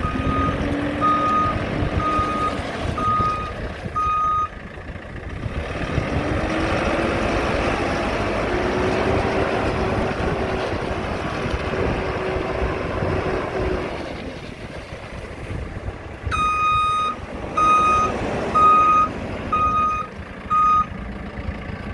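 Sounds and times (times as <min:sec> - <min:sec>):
reversing alarm beeps: 0:00.0 - 0:04.5, 0:16.3 - 0:20.9
diesel engine under load: 0:00.0 - 0:21.9.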